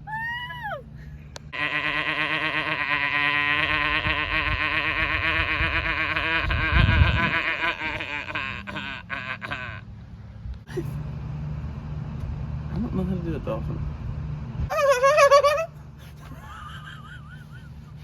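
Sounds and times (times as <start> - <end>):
person imitating animal call: 1.6 - 9.8, 14.7 - 15.8.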